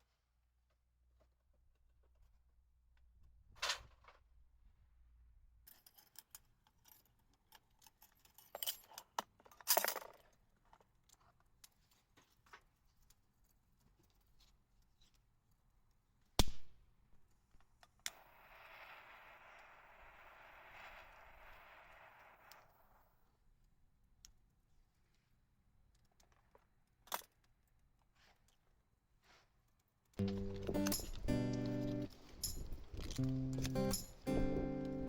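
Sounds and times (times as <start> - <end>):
small objects clinking and rustling: 5.7 - 12.4, 30.2 - 35.0.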